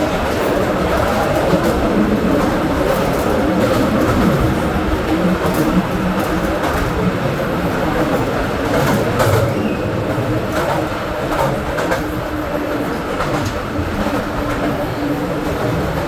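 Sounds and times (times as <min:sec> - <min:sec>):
mine train running on rails: 0:00.0 - 0:16.0
wheels clicking: 0:00.0 - 0:16.0.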